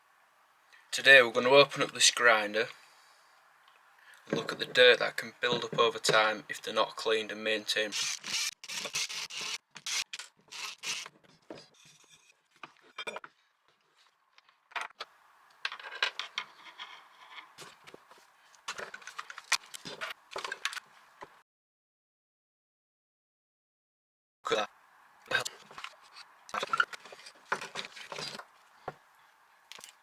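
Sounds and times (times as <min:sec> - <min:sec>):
plastic scraping and rubbing: 0:15.7 - 0:21.4, 0:25.4 - 0:29.0.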